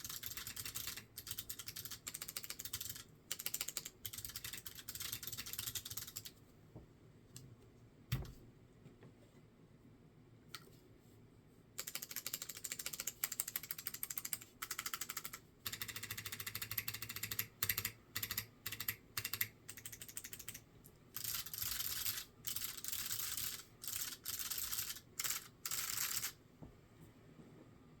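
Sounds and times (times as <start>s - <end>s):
clicky mechanical keyboard typing: 0.0s - 6.4s, 11.8s - 20.6s, 21.2s - 26.4s.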